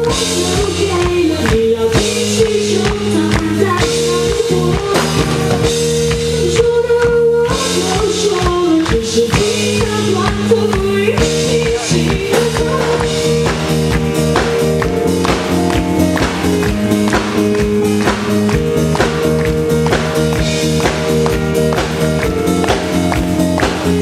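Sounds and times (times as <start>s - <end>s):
person singing: 0.0s - 13.6s
bass: 0.0s - 24.0s
drum kit: 0.0s - 24.0s
piano: 0.0s - 24.0s.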